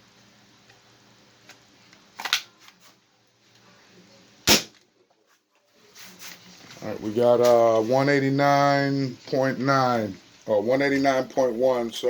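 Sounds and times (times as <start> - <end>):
toy blaster firing crack: 4.4 - 4.8.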